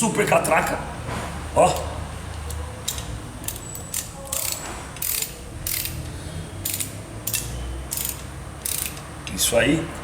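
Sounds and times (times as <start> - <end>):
ratchet clicking: 2.5 - 9.5.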